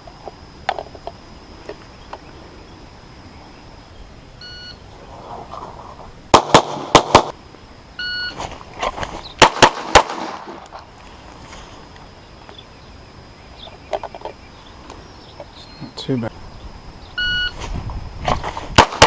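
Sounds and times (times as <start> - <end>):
short electronic beep: 4.4 - 4.8, 8.0 - 8.4, 17.2 - 17.6
pistol shots: 6.3 - 7.3, 9.4 - 10.6, 18.8 - 19.0.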